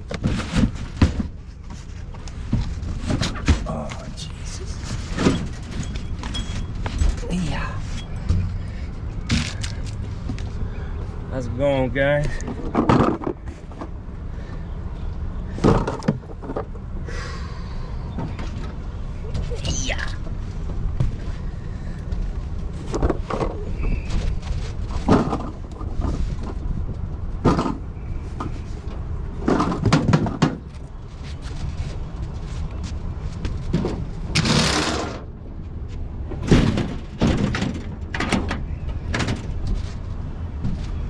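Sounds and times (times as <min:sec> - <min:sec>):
knocks and rattles: 0:00.0 - 0:10.4, 0:12.3 - 0:14.0, 0:29.4 - 0:30.9, 0:33.5 - 0:35.4, 0:36.3 - 0:41.0
vehicle rumbling on the move: 0:00.0 - 0:41.0.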